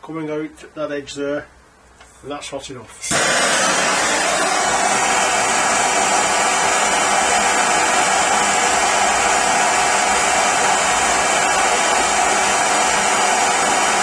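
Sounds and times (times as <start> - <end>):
gas blowtorch burning: 3.0 - 14.0.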